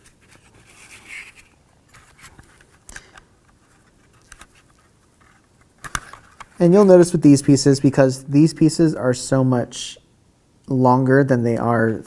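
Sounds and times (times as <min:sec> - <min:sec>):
kit pieces scraping and clicking: 0:00.0 - 0:06.9.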